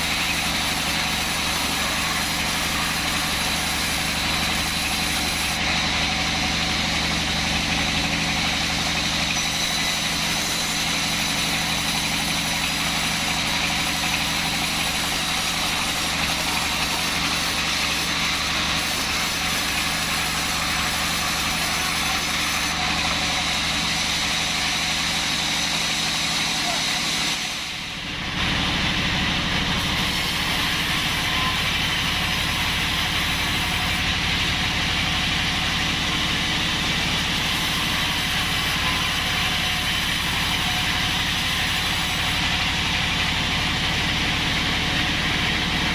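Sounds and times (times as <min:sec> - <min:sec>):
band saw machine drone: 0:00.0 - 0:45.9
high machine whine: 0:00.0 - 0:45.9.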